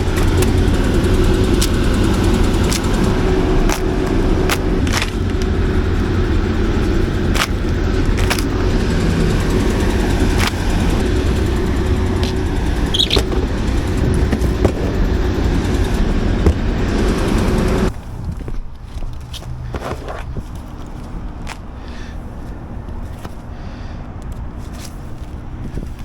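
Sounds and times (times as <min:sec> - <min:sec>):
generator low drone: 0:00.0 - 0:19.3
sharp knocks and clatters: 0:06.8 - 0:19.4.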